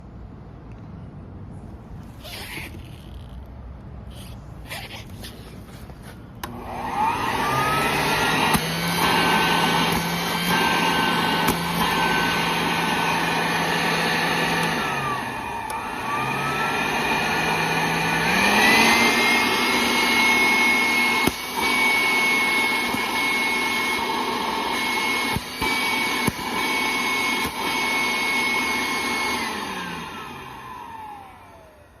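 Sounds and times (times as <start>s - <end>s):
vacuum motor whine: 6.4s - 32.0s.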